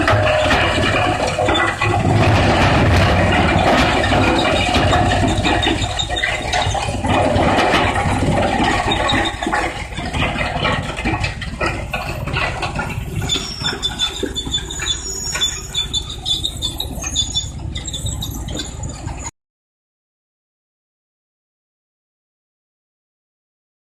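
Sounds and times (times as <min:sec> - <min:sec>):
industrial wood crusher: 0:00.0 - 0:19.2
high squeal: 0:13.0 - 0:19.3.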